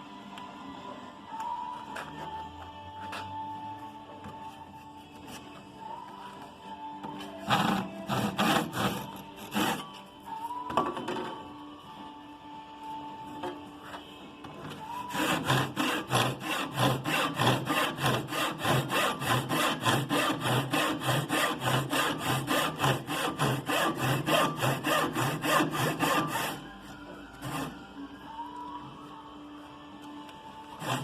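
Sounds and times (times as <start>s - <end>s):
hand saw cutting wood: 7.4s - 9.9s, 15.0s - 26.7s, 27.4s - 27.8s, 30.8s - 31.0s.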